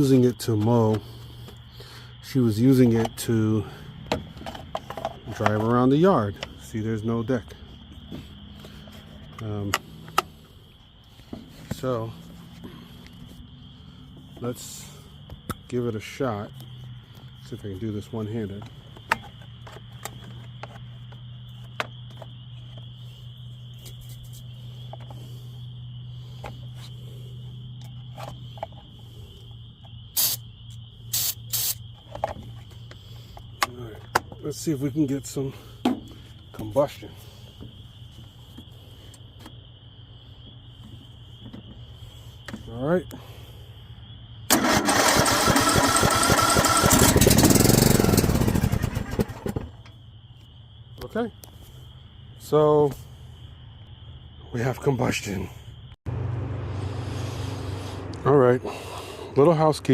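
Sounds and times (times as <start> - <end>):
aerosol can spraying: 30.2 - 30.4, 31.1 - 31.8
electric starter cranking: 44.5 - 49.6
lawn tractor engine running: 44.5 - 49.9
steady low hum: 55.9 - 59.9.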